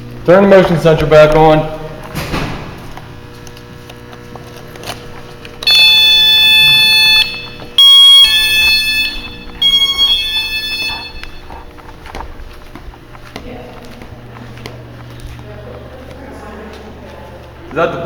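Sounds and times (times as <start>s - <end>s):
motion-sensor alarm beeping: 5.6s - 11.8s.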